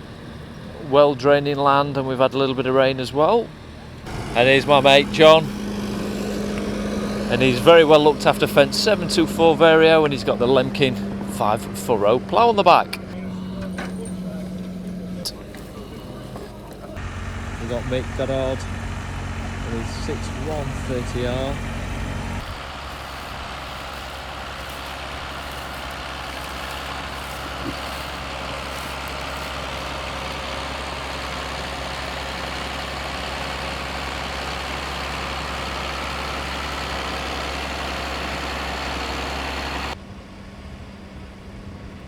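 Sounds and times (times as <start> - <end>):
tractor diesel engine running: 0.0 - 42.0.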